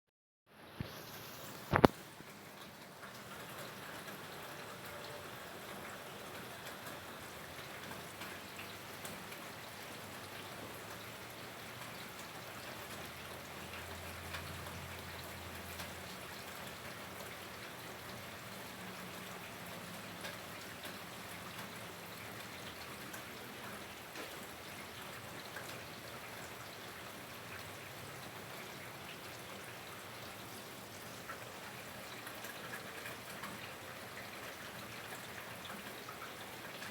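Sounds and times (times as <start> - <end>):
steady rain hiss: 0.5 - 36.9
raindrops ticking on surfaces: 0.7 - 36.9.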